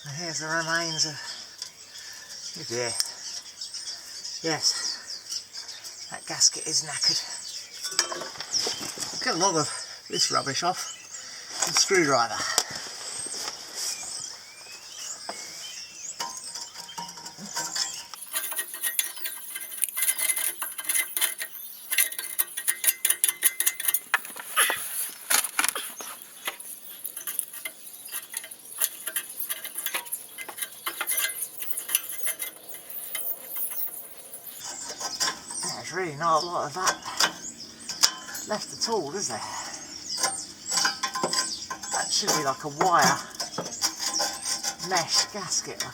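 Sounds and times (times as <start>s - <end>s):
screwdriver scraping metal: 16.2s - 35.6s, 40.2s - 45.9s.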